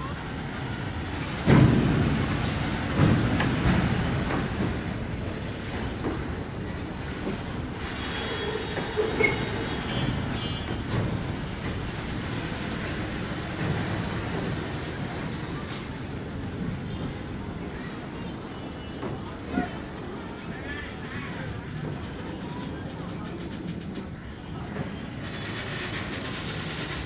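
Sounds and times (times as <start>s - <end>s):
faint wheel squeal: 7.4s - 10.8s, 19.5s - 27.0s
freight wagon wheels clattering: 20.2s - 27.0s.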